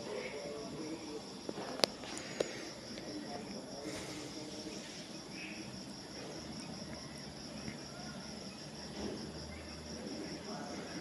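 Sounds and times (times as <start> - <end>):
microphone hiss: 0.0 - 11.0.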